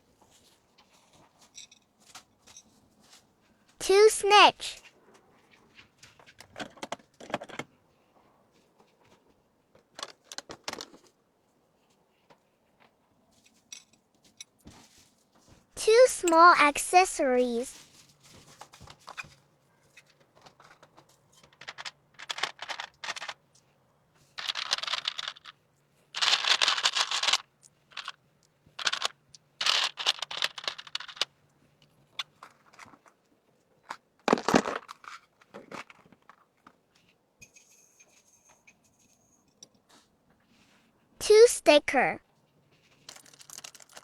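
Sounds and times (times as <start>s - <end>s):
packaging crinkling and rustling: 24.4s - 25.5s, 26.2s - 28.2s, 28.8s - 31.3s, 42.9s - 44.0s.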